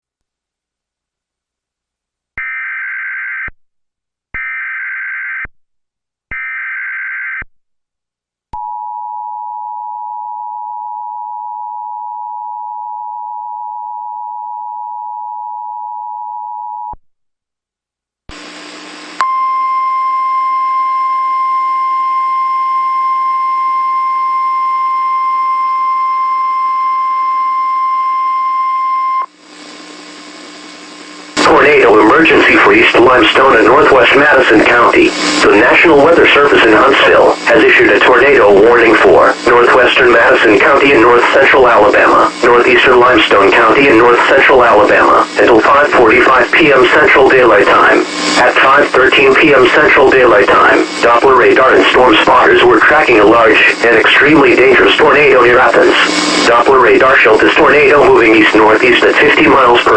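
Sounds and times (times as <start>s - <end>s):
radio static: 18.3s - 19.2s, 29.4s - 59.9s
steady warning tone: 19.2s - 29.3s
two-tone attention signal: 19.2s - 29.3s.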